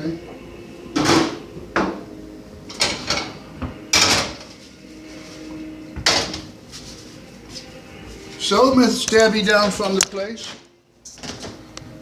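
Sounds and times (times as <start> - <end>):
dish and utensils clattering: 2.7 - 4.6, 6.0 - 6.5.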